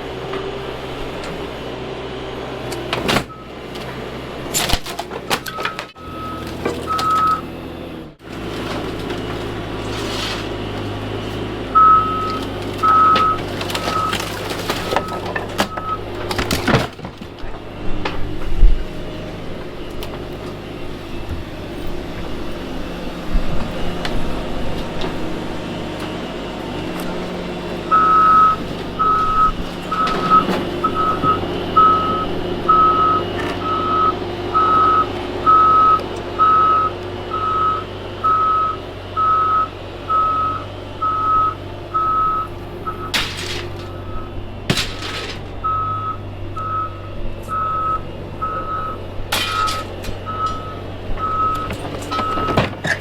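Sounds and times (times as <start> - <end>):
vehicle engine running: 0.0 - 53.0
back-up alarm beeping: 3.3 - 3.6, 5.4 - 7.6, 11.7 - 16.2, 27.1 - 44.6, 45.6 - 52.7
sharp metal clanks: 43.1 - 44.0, 49.3 - 50.6.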